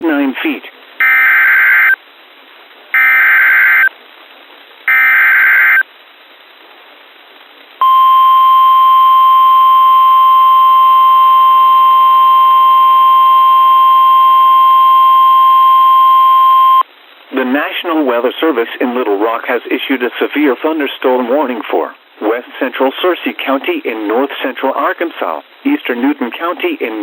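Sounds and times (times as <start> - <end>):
radio hiss: 0.0 - 1.0, 9.7 - 27.0
steady warning alarm tone: 3.0 - 3.9, 7.8 - 16.8.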